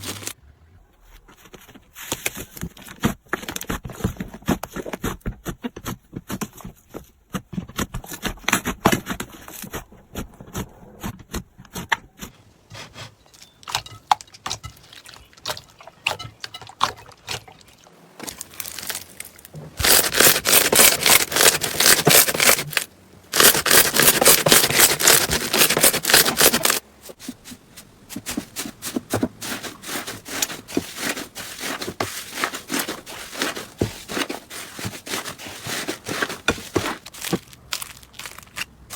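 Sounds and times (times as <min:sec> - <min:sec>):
slime popping and crackling: 0:37.0 - 0:38.9.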